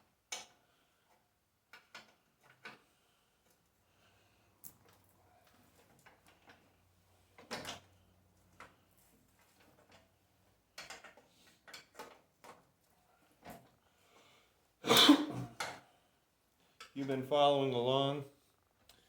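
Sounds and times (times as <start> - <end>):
faint clicks and knocks of handling: 0.2 - 3.8, 4.5 - 14.4.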